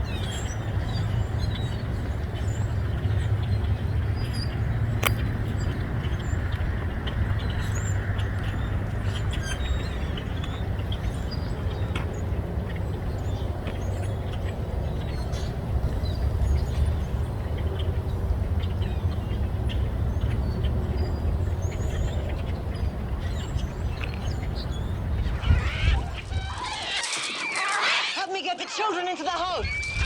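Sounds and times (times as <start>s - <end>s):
steady low rumble: 0.0s - 26.8s, 29.6s - 30.0s
grackles chirping: 18.7s - 28.2s, 29.5s - 30.0s.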